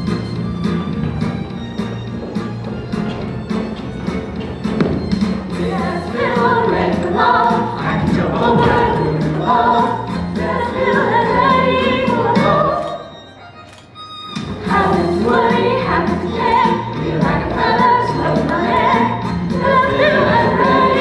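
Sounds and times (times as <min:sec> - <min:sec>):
instrumental accompaniment with beat: 0:00.0 - 0:21.0
children's chorus singing: 0:05.4 - 0:13.2, 0:14.6 - 0:21.0.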